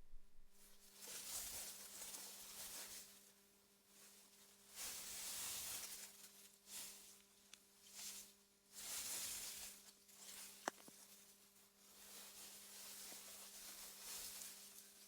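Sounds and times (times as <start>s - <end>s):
faint steady hum: 0.0s - 0.8s.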